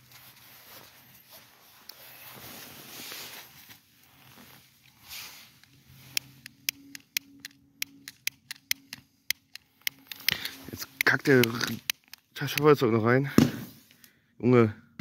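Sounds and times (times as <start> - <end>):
lighter clicking: 6.1 - 12.7.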